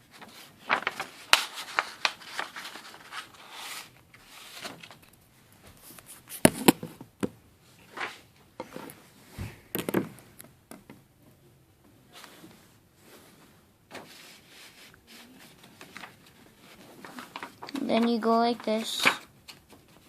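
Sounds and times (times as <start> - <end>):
paper crinkling and folding: 0.0 - 6.8, 13.9 - 20.0.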